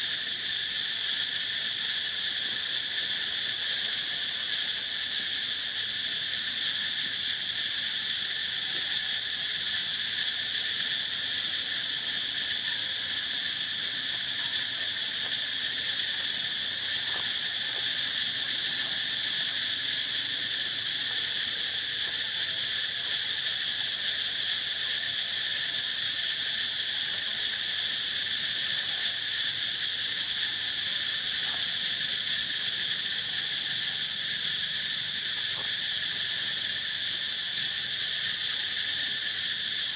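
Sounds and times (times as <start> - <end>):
chorus of insects droning: 0.0 - 39.9.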